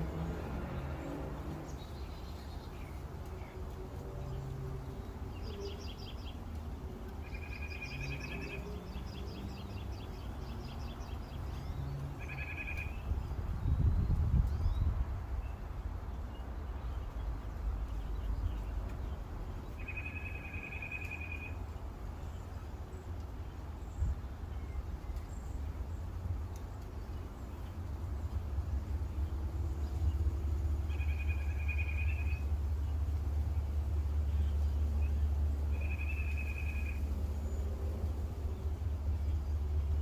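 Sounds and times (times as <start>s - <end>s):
bird trilling: 12.2s - 13.0s, 19.8s - 21.6s, 30.9s - 32.4s, 35.7s - 37.0s.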